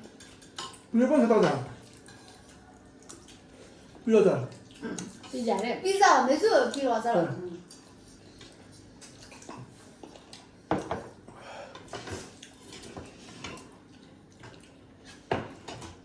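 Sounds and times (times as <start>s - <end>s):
utensils clinking on plates: 0.0s - 3.4s.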